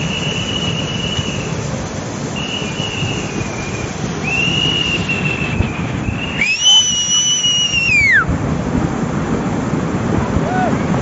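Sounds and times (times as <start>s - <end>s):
long high whistle tones: 0.0s - 8.3s
rushing floodwater: 0.0s - 11.0s.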